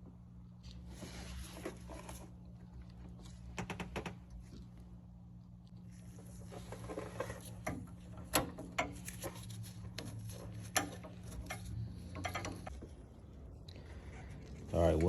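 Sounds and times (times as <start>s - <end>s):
steady low hum: 0.0s - 15.0s
hand tools clicking and knocking: 10.4s - 12.8s.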